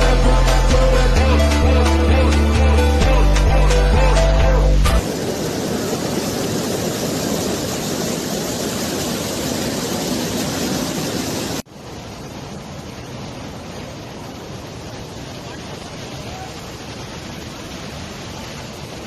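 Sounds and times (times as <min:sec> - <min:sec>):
background music: 0:00.0 - 0:05.0
waterfall rushing: 0:00.0 - 0:19.0.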